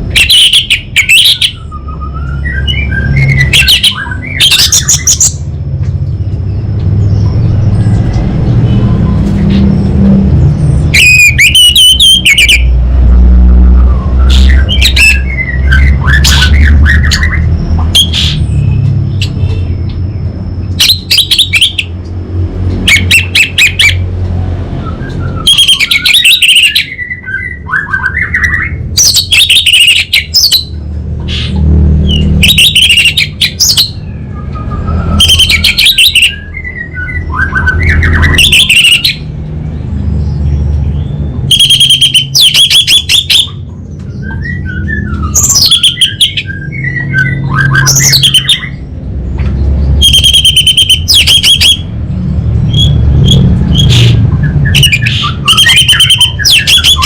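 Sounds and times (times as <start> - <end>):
steady low rumble: 5.0 - 11.1
thrush singing: 7.4 - 19.8.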